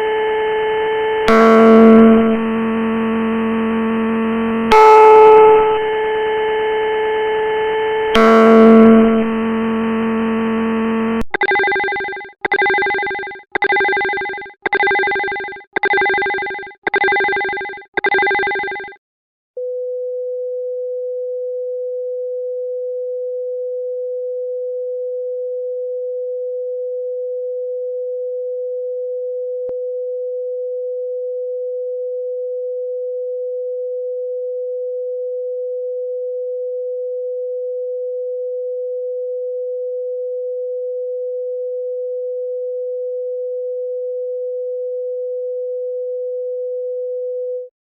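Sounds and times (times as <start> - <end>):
chime-like electronic tones: 4.7 - 5.9, 11.3 - 19.0
steady alert tone: 4.7 - 5.9, 11.2 - 19.0.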